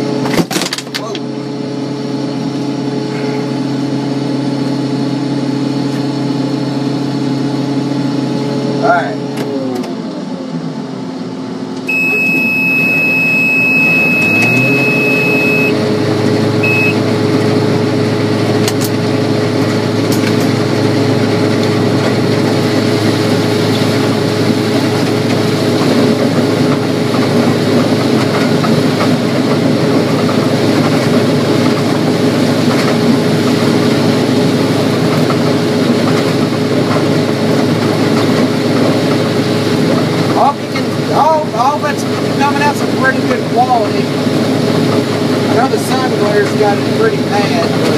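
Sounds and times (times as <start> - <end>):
combine engine running: 0.0 - 47.9
high beep: 11.9 - 15.8, 16.6 - 17.0.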